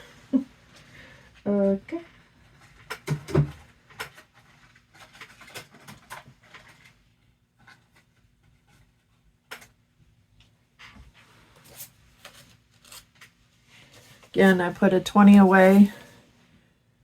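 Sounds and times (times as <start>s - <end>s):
paper rustling: 11.4s - 14.4s.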